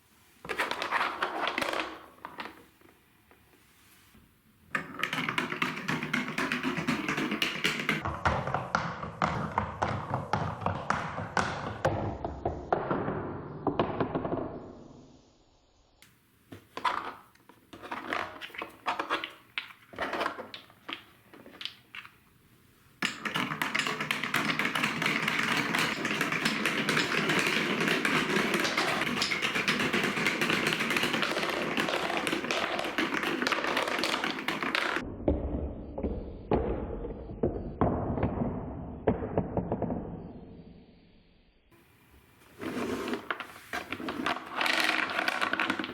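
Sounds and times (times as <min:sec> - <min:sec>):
marbles rolling and clacking: 0:23.0 - 0:35.4, 0:44.0 - 0:45.9.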